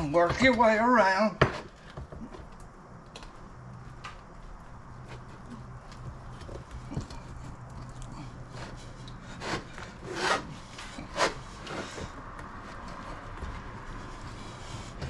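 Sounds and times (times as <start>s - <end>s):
tire bead scraping wheel rim: 8.3s - 15.0s.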